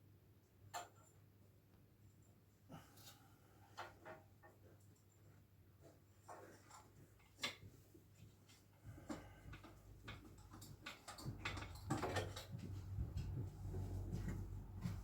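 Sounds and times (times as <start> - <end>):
clicks and knocks of handling: 9.0 - 13.4.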